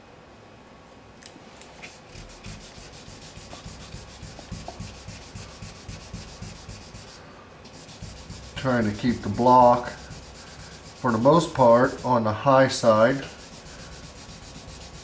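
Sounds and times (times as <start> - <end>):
sanding block rubbing on paint: 1.9 - 15.0.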